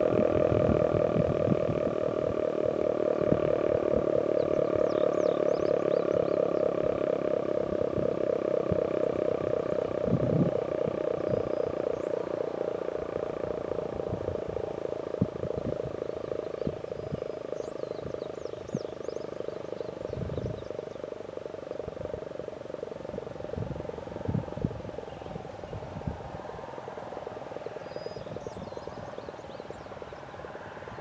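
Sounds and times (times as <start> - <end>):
siren steady tone: 0.0 - 31.0
bird chirps: 4.2 - 6.8, 11.1 - 12.7, 15.4 - 22.2, 25.0 - 31.0.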